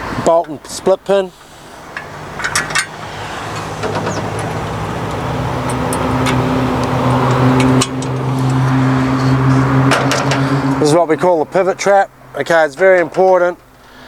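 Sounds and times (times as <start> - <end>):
vehicle engine running: 1.3 - 13.9.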